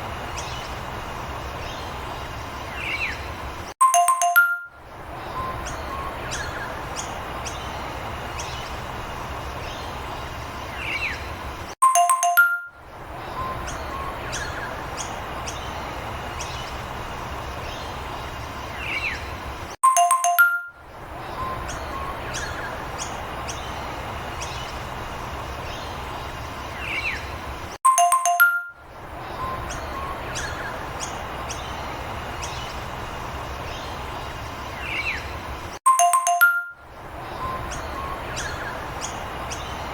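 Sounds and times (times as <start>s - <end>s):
bell-like chime: 3.8s - 4.8s, 11.8s - 12.8s, 19.8s - 20.8s, 27.9s - 28.8s, 35.9s - 36.8s.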